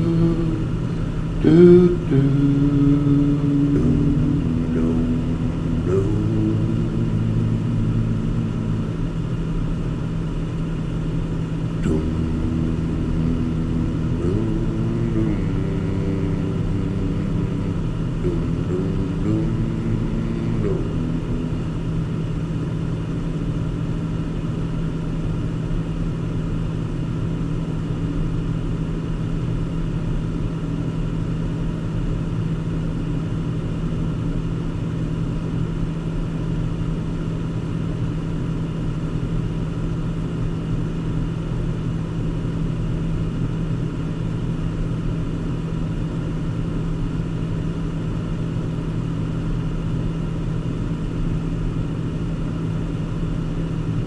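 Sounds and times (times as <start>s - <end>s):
car engine hum inside cabin: 0.0s - 24.5s.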